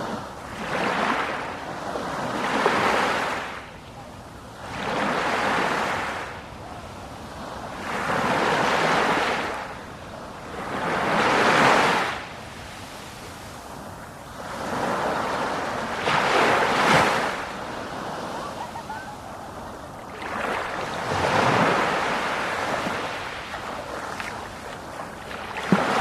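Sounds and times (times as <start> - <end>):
sea waves breaking on shore: 0.0 - 3.7, 4.3 - 26.0.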